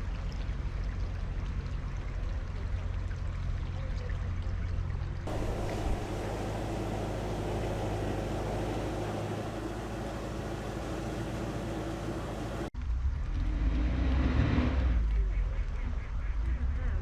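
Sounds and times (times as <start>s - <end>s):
boat diesel engine running: 5.3s - 12.7s
steady hiss: 5.3s - 12.7s.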